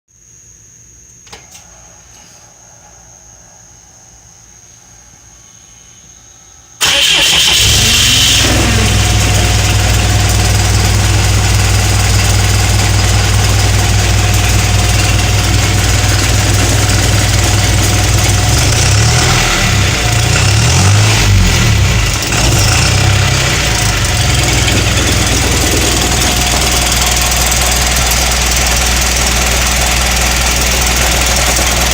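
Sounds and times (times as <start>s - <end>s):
diesel engine idling roughly: 6.8s - 31.9s
diesel engine starting: 6.8s - 31.9s.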